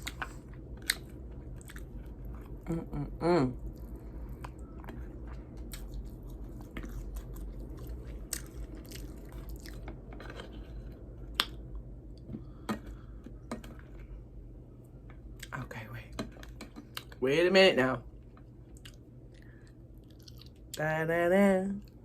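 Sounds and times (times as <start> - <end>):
chewing and biting chicken wings: 3.6 - 9.9.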